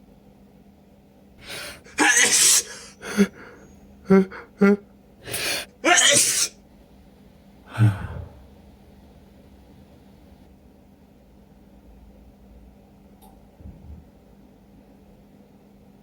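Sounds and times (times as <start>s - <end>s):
gasping breaths: 1.4s - 6.5s, 7.7s - 8.6s
person sneezing: 1.4s - 6.5s, 7.7s - 8.4s.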